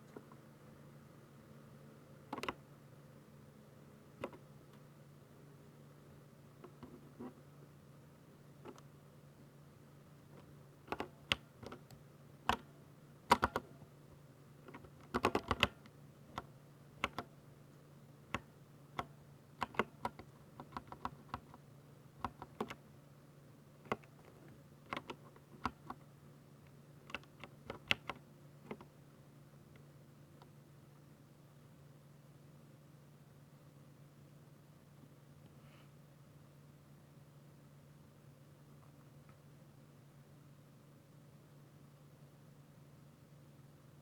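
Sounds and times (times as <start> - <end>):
faint steady hum: 0.0 - 44.0
typing on mechanical keyboard: 10.9 - 11.9, 13.3 - 13.7, 14.7 - 17.3, 18.3 - 21.6, 22.2 - 22.8, 24.9 - 26.0, 27.1 - 28.9.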